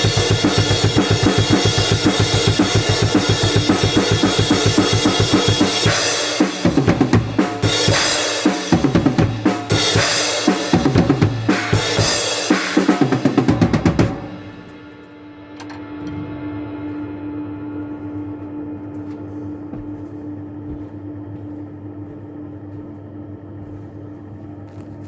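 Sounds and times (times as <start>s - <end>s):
fast drum kit playing: 0.0s - 14.9s
music: 0.0s - 20.2s.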